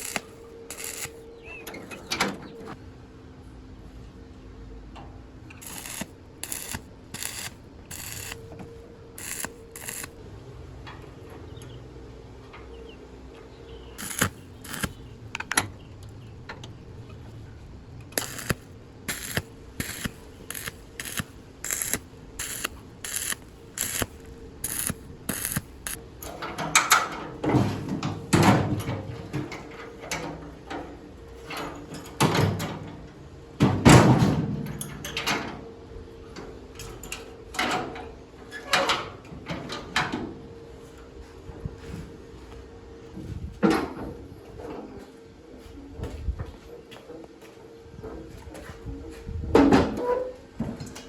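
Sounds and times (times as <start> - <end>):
regular metal clicks: 0.0 - 2.4, 5.6 - 10.2, 14.0 - 16.8, 18.0 - 26.0
faint steady hum: 0.0 - 27.3.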